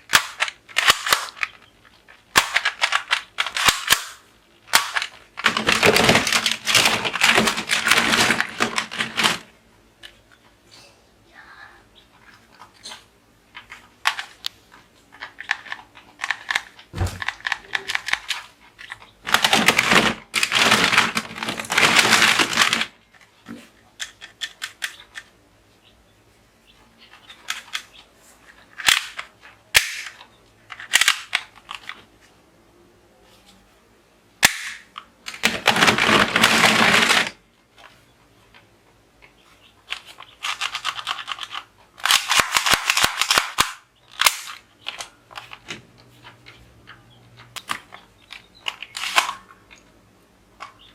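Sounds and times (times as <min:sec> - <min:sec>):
rapid toy gunfire: 0:00.1 - 0:01.4, 0:02.3 - 0:08.5, 0:34.4 - 0:34.8, 0:40.5 - 0:44.6.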